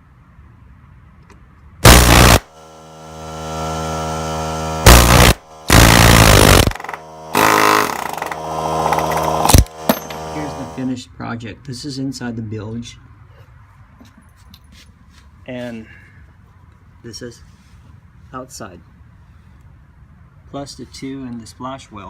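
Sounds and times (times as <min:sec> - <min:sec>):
steady hum: 0:01.8 - 0:11.0
air hammer rattling on brass tube: 0:04.9 - 0:10.6.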